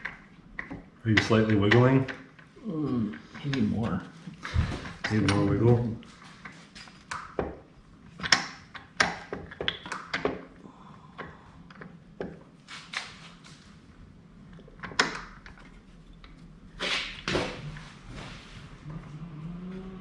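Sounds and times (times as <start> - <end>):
metal clicks and knocks: 0.0 - 2.5, 4.8 - 10.6, 14.5 - 16.4.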